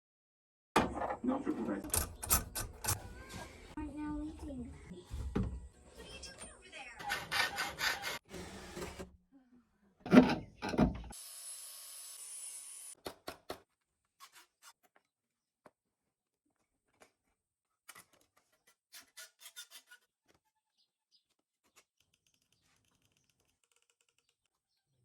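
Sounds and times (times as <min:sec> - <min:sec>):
timber and tools clicking: 0:21.6 - 0:24.7.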